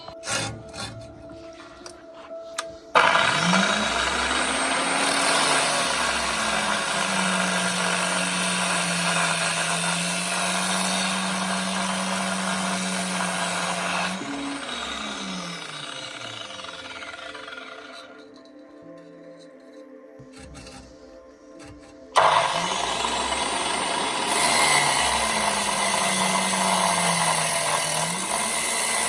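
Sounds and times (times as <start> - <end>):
angle grinder whining: 2.9 - 18.6, 22.2 - 29.0.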